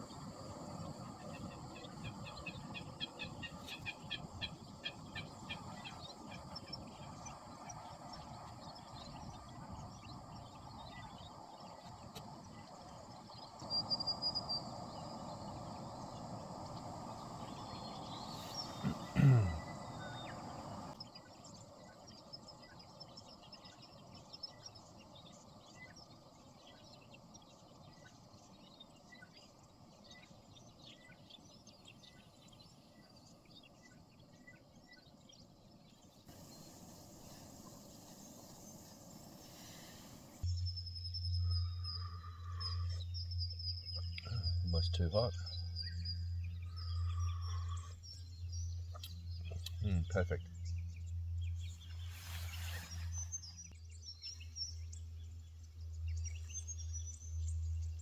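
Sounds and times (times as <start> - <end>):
small high chirps: 36.3 - 58.0.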